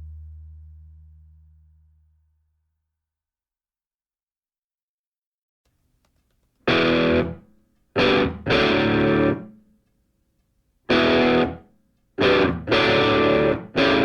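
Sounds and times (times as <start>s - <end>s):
distorted electric guitar chords: 6.7s - 7.4s, 8.0s - 9.5s, 10.9s - 11.6s, 12.2s - 14.0s.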